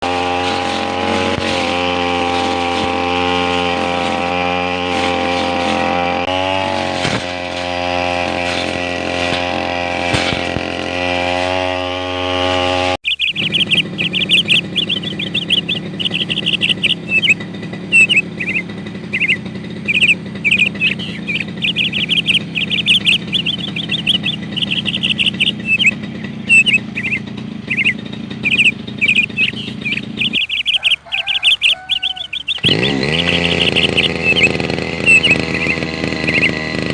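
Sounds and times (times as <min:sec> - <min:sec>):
birds chirping rapidly: 0:00.0 - 0:11.6, 0:12.7 - 0:36.9
brush cutter engine running: 0:00.0 - 0:36.9
low steady hum: 0:13.1 - 0:36.9.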